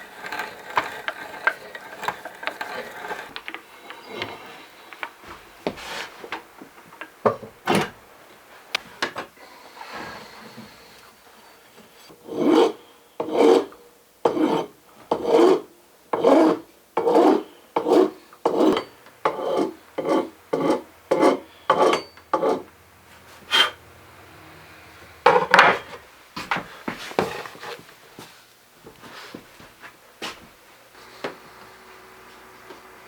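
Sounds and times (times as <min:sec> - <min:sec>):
hand rasp scraping wood: 0:00.0 - 0:04.8, 0:12.1 - 0:22.7, 0:23.3 - 0:23.8.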